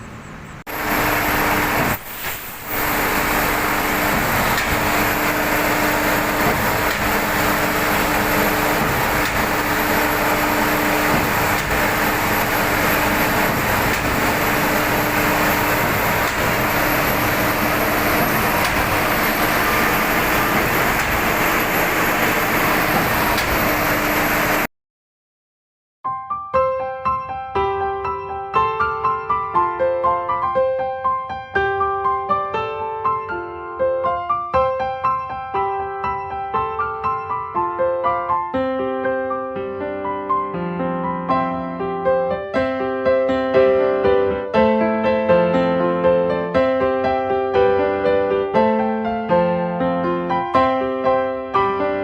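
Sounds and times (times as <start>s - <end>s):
heavy construction machinery droning: 0.0s - 24.7s.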